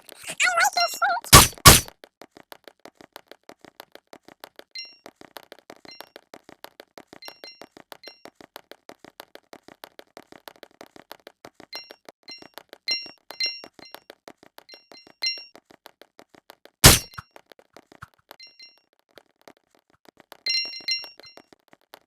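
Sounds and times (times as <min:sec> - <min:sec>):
sharp loud hits: 0:01.3 - 0:01.9, 0:16.8 - 0:17.2.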